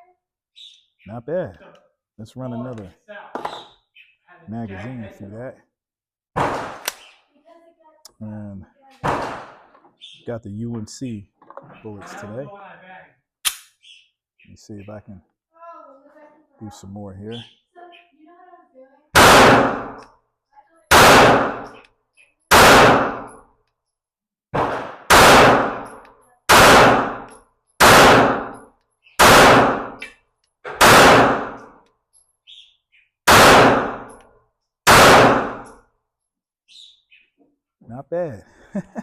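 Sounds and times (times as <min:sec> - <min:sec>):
pistol shots: 0:06.4 - 0:07.1, 0:09.0 - 0:09.7, 0:19.2 - 0:20.1, 0:20.9 - 0:21.8, 0:22.5 - 0:23.4, 0:24.6 - 0:28.6, 0:29.2 - 0:31.7, 0:33.3 - 0:34.2, 0:34.8 - 0:35.8.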